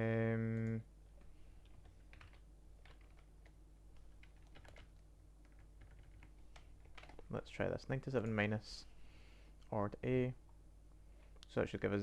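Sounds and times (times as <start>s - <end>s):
steady hum: 0.0s - 12.0s
typing on computer keyboard: 1.6s - 7.2s.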